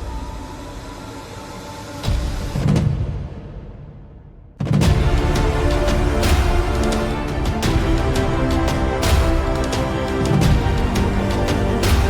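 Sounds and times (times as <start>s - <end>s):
music with low hit and sharp strikes: 4.6s - 12.0s.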